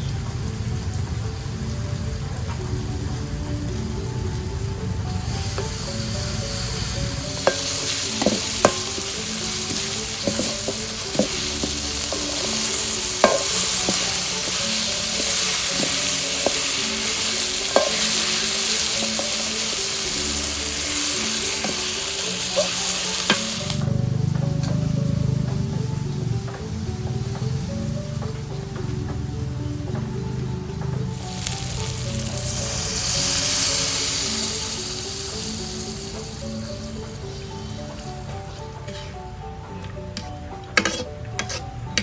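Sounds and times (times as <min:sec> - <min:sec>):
food sizzling in hot oil: 0:00.0 - 0:42.0
utensil clicking against pan: 0:40.2 - 0:41.6.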